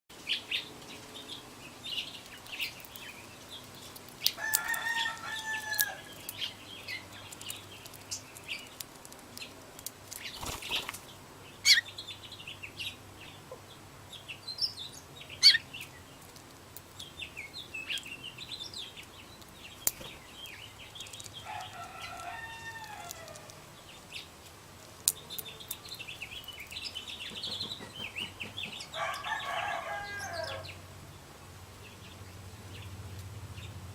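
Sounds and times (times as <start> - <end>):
songbirds chirping: 0.1 - 33.9
rooster crowing: 4.4 - 6.2, 21.4 - 23.6, 28.9 - 30.8.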